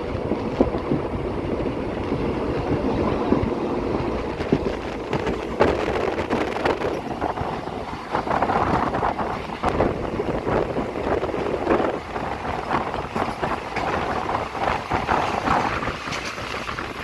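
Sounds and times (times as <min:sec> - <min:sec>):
train rumbling on rails: 0:00.0 - 0:17.0
wind noise: 0:00.0 - 0:17.0
sharp clacks: 0:12.9 - 0:17.0.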